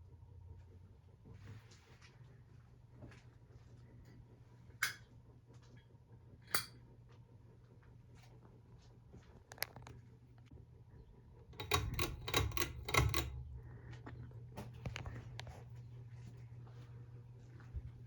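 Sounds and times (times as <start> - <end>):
ceiling fan motor humming: 0.0 - 18.0
rattling clicks: 11.6 - 13.4.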